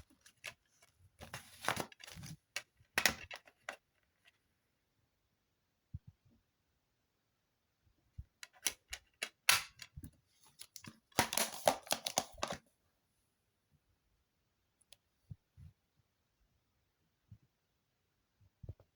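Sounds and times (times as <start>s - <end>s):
plastic case being handled: 0.0s - 4.4s, 8.4s - 12.6s.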